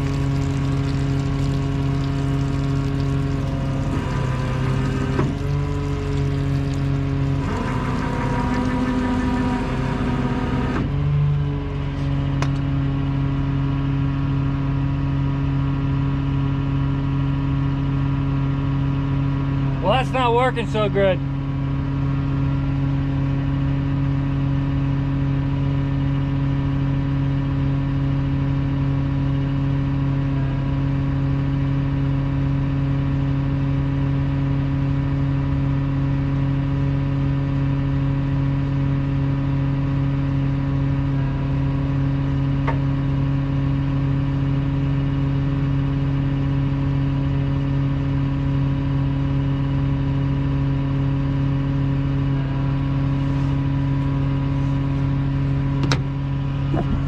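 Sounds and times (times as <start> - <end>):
engine idling: 0.0 - 13.5, 51.4 - 57.0.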